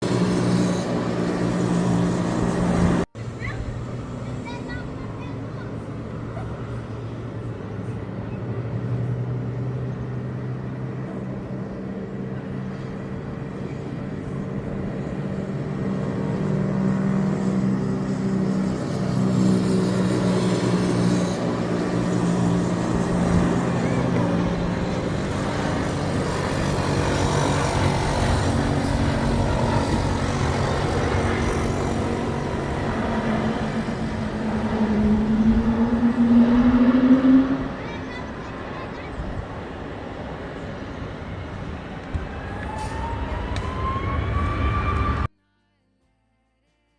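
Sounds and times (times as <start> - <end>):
steeply rising jet tone: 23.4 - 37.8, 42.3 - 45.3.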